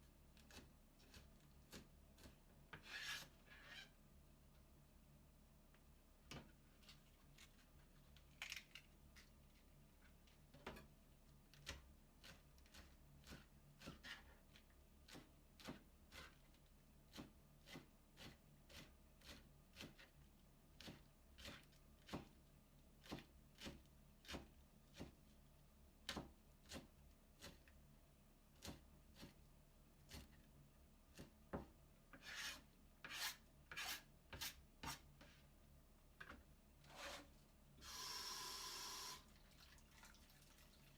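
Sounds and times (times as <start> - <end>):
knife slicing cabbage: 0.4 - 3.8, 11.6 - 20.2, 20.8 - 22.4, 23.0 - 25.2, 26.0 - 27.7, 28.6 - 29.4, 30.0 - 30.4.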